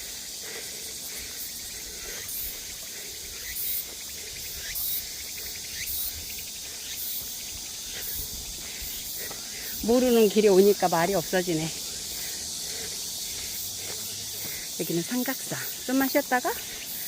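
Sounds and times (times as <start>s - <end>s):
insects droning: 0.0s - 17.0s.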